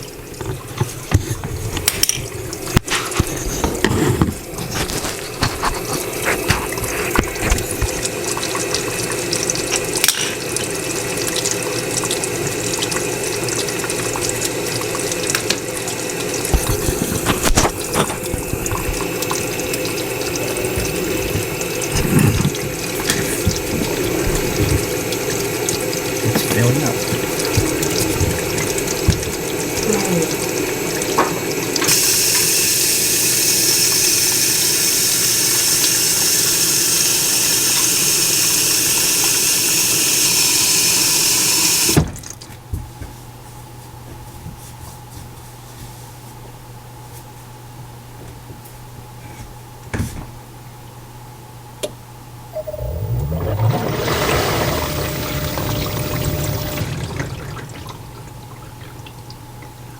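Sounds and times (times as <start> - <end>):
dishwasher filling with water: 0.0 - 43.2, 52.6 - 59.9
water rushing: 15.9 - 32.3, 52.6 - 59.9.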